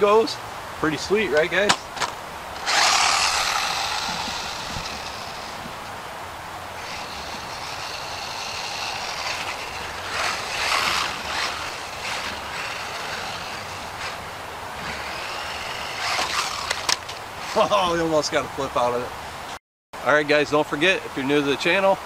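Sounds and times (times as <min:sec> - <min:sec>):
toy truck motor whining: 0:02.6 - 0:05.9, 0:06.8 - 0:17.6.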